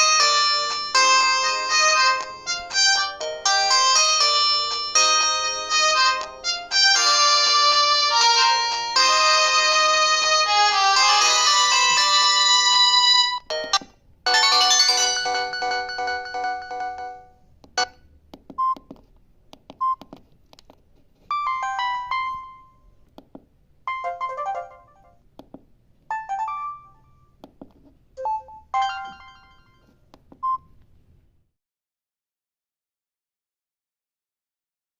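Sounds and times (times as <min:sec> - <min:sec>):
phone electronic alert tones: 0:13.4 - 0:17.2, 0:21.3 - 0:22.8, 0:28.2 - 0:30.7.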